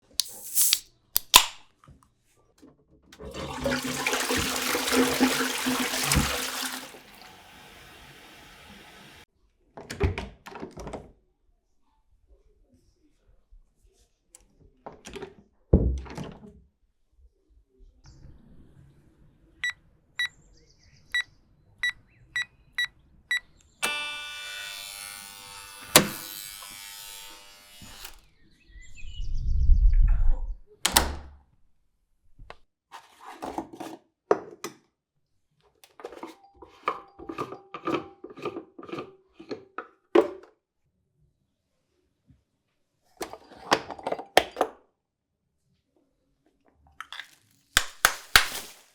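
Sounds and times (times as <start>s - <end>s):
coffee maker clattering: 3.2s - 9.2s, 36.0s - 40.4s
intercom buzzer: 23.8s - 26.2s
door shutting: 30.9s - 31.3s.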